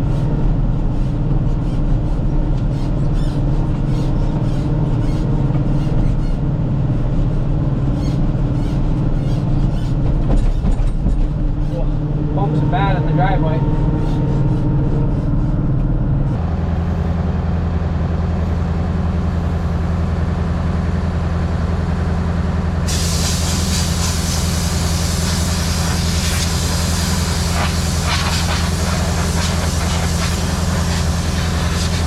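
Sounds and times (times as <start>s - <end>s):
low engine hum: 0.0s - 32.0s
rushing hiss of blowing air: 22.9s - 32.0s.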